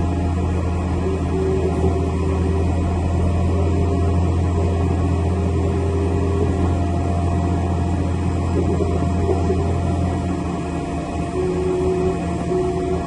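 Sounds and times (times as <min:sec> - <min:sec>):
faint steady tones: 0:00.0 - 0:13.0
low machine drone: 0:00.0 - 0:13.0.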